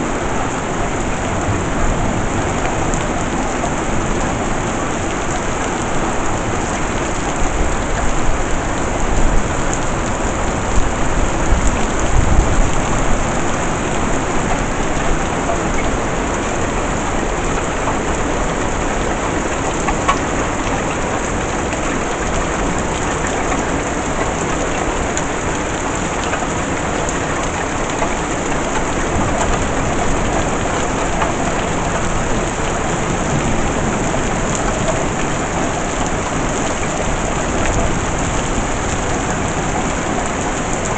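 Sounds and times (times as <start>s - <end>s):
heavy rain pouring: 0.0s - 40.9s
thunder rumbling: 28.9s - 40.9s.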